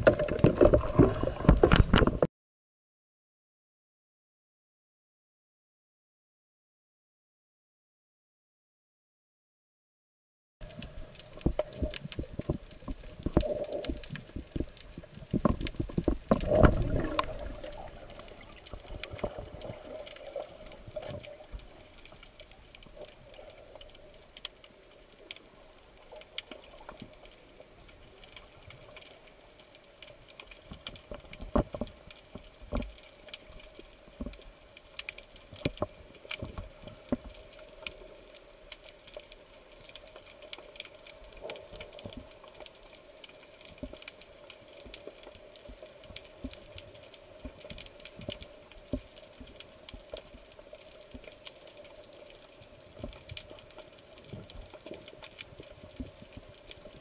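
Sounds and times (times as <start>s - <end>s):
underwater crackling clicks: 0.0s - 2.3s, 10.6s - 57.0s
water rushing and thumping: 0.0s - 2.3s, 10.6s - 23.9s, 30.6s - 33.1s.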